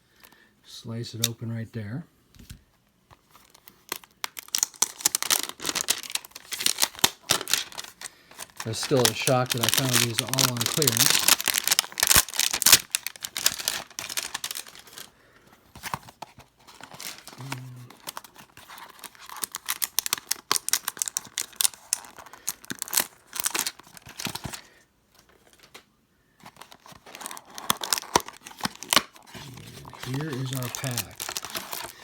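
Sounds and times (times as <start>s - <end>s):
plastic and foil wrappers tearing: 3.4s - 15.1s, 16.6s - 24.7s, 26.4s - 32.0s.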